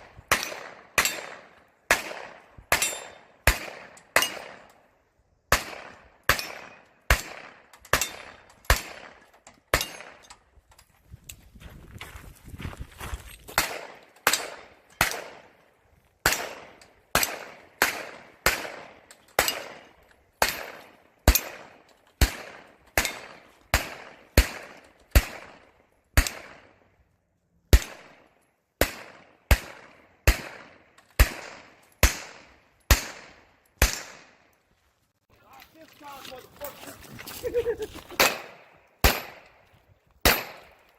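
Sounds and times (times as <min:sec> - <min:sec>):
pistol shots: 0:00.0 - 0:04.7, 0:05.5 - 0:10.3, 0:13.6 - 0:15.6, 0:16.2 - 0:26.8, 0:27.7 - 0:34.4, 0:38.2 - 0:39.6, 0:40.2 - 0:40.9.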